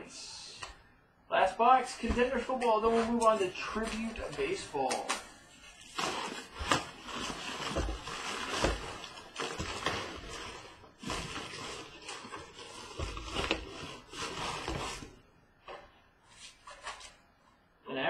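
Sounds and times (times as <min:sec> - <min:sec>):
card packaging crinkling: 0:02.1 - 0:15.2.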